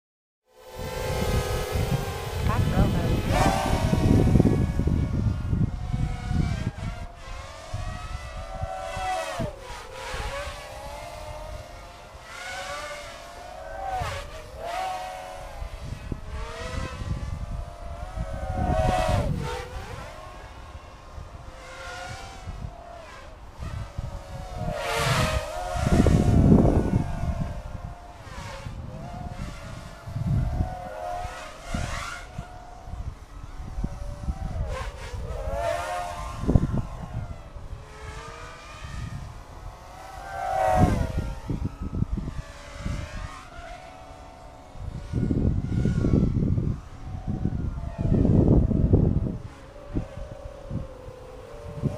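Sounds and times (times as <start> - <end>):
drone motors whining: 0.5 - 51.9
wind rumble on microphone: 0.5 - 51.9.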